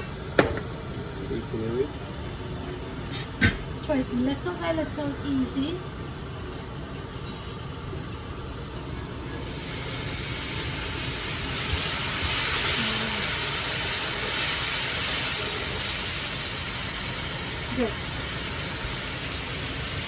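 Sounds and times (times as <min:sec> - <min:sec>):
water sizzling in hot oil: 0:09.2 - 0:20.0.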